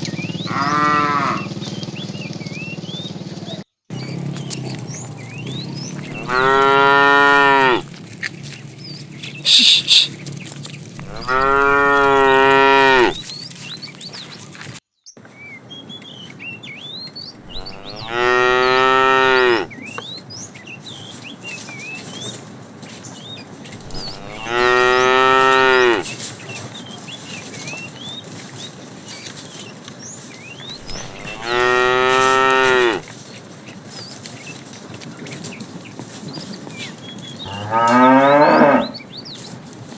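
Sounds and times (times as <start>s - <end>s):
cow mooing: 0.4s - 1.6s, 5.2s - 7.9s, 11.0s - 13.2s, 17.4s - 19.8s, 23.8s - 26.1s, 30.8s - 33.1s, 37.5s - 39.0s
faint bird chirps: 9.2s - 10.2s.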